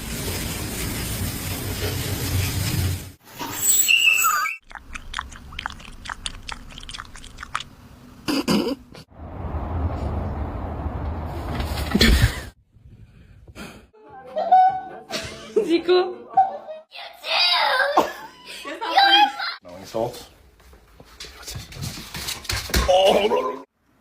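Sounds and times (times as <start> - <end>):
crisp chewing crunches: 4.6 - 7.7.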